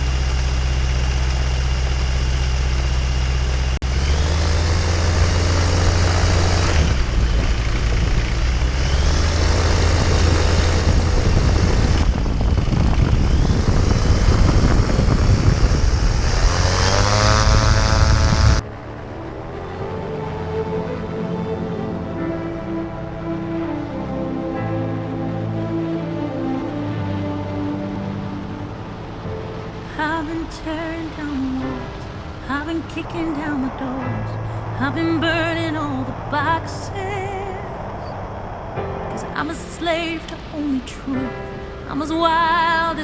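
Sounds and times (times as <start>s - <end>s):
loud low engine running: 0.0s - 26.0s
quiet music: 18.6s - 43.0s.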